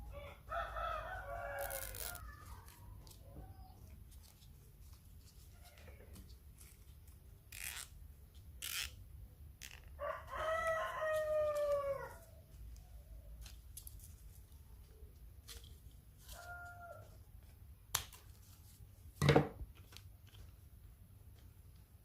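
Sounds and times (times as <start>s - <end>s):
rooster crowing: 0.1s - 2.7s, 10.0s - 12.3s, 16.3s - 17.2s.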